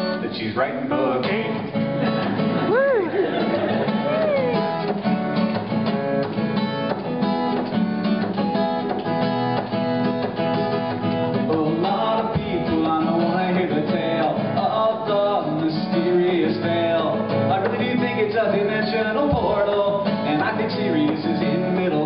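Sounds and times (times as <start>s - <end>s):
acoustic guitar strumming: 0.0s - 22.0s
person singing: 3.9s - 4.9s.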